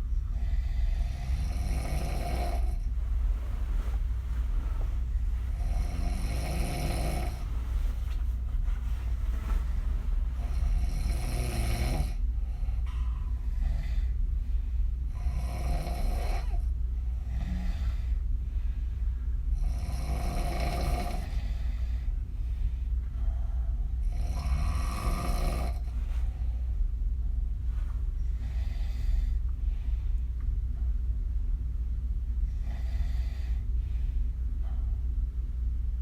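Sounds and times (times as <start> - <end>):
steady low hum: 0.0 - 36.0
woman snoring: 0.4 - 3.0, 5.5 - 7.8, 10.4 - 12.2, 15.2 - 16.6, 17.3 - 18.0, 19.6 - 21.6, 24.1 - 25.9.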